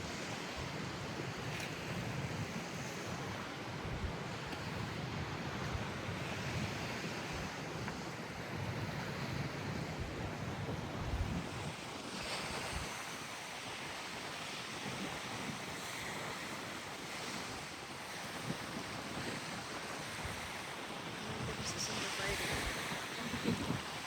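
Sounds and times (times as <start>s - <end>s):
wind blowing across microphone: 0.0s - 24.0s.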